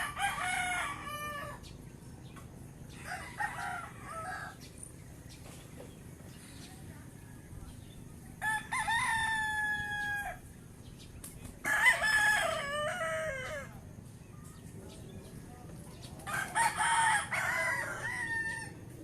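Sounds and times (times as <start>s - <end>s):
roosters crowing: 0.0s - 5.3s, 8.4s - 10.8s, 11.4s - 14.2s, 15.9s - 19.0s.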